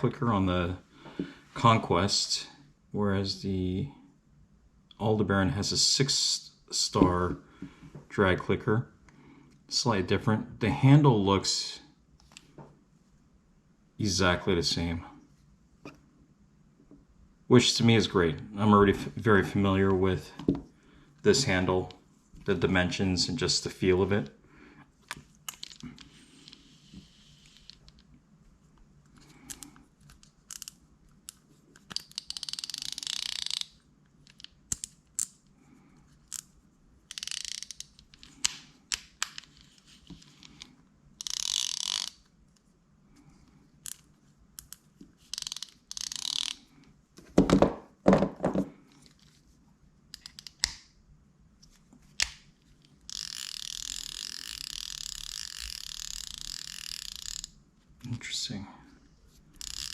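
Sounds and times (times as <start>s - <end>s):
fishing reel ratcheting clicks: 30.5s - 30.8s, 31.9s - 35.3s, 37.1s - 38.3s, 41.2s - 42.2s, 44.6s - 46.6s, 53.1s - 57.5s, 59.6s - 59.9s.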